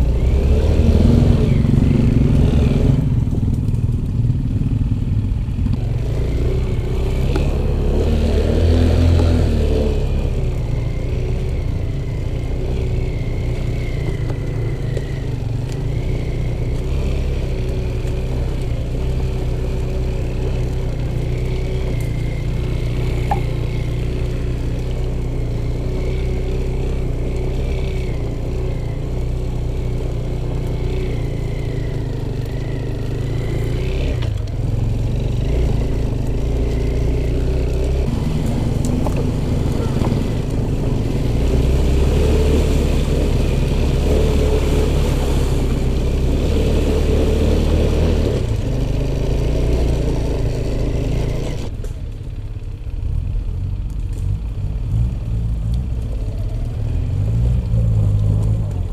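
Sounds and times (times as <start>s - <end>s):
motorcycle engine running: 0.0s - 58.9s
motorcycle rattling: 0.0s - 58.9s.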